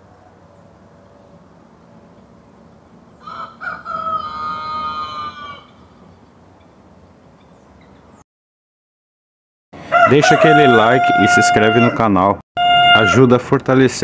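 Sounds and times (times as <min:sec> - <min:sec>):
rooster crowing: 0:03.2 - 0:06.0, 0:09.8 - 0:13.3.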